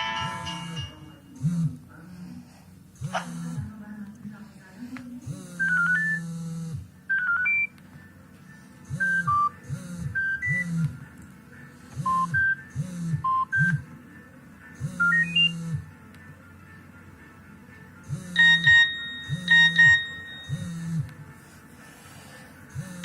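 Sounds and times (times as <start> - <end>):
polyphonic ringtone tune: 0.0 - 1.0, 7.1 - 7.7, 15.0 - 15.7, 18.3 - 21.0.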